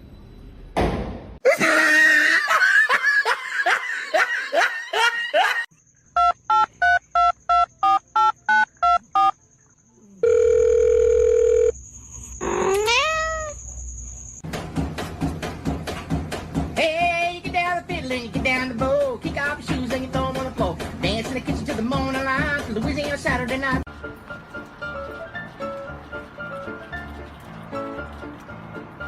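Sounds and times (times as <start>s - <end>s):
electronic beeps: 6.1s - 9.4s
cat meow: 12.5s - 13.6s.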